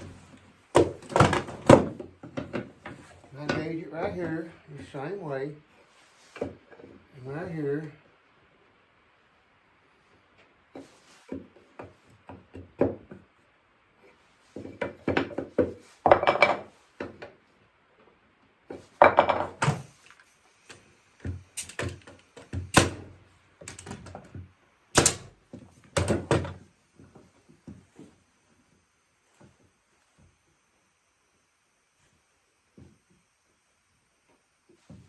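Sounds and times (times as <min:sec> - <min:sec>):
wooden knocks and thunks: 0:00.0 - 0:03.7, 0:10.8 - 0:13.3, 0:23.8 - 0:26.6.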